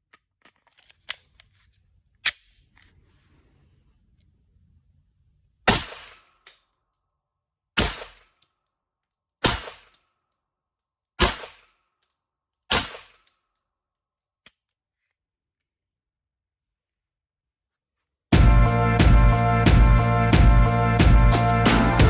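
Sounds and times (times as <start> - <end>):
pistol shots: 5.7 - 6.3, 7.8 - 8.3, 9.4 - 10.0, 11.2 - 11.7, 12.7 - 13.2.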